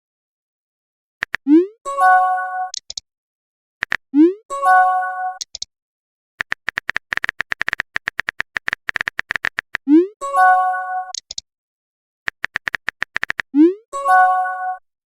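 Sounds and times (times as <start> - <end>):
rapid typing clicks: 6.4 - 9.8, 12.3 - 13.5.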